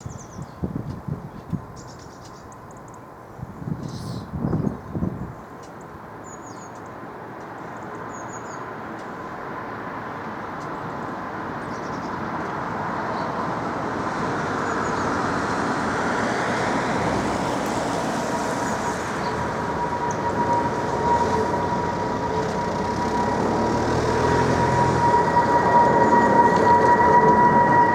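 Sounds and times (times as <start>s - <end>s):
jet engines roaring: 9.2s - 27.9s
thin screeching tone: 18.6s - 27.9s.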